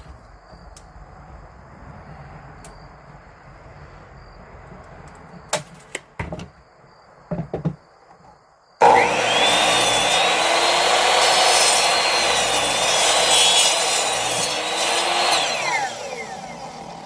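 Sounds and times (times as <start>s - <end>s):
wood knocks and clicks: 5.5s - 6.6s, 7.3s - 8.4s.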